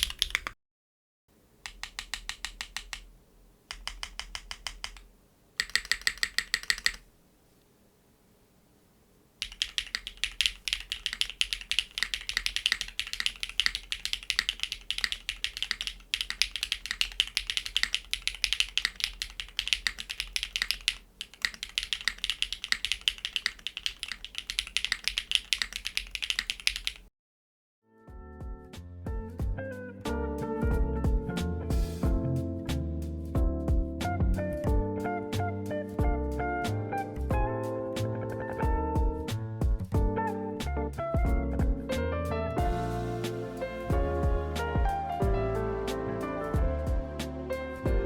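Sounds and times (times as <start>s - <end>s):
typing on mechanical keyboard: 0.0s - 0.6s, 1.6s - 3.1s, 3.7s - 7.1s, 9.4s - 27.1s.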